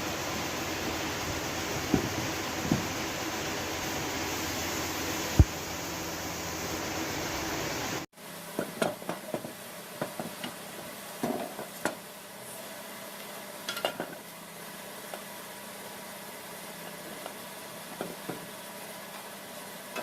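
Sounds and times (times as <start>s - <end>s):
workshop machine noise: 0.0s - 12.6s.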